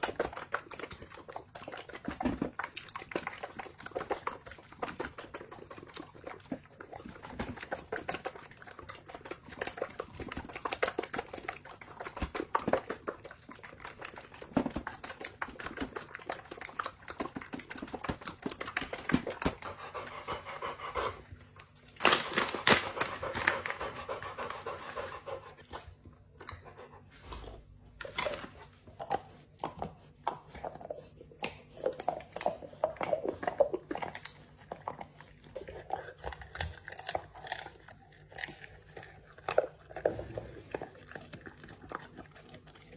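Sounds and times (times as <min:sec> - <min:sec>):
dog panting: 0:00.0 - 0:21.7, 0:22.6 - 0:27.6.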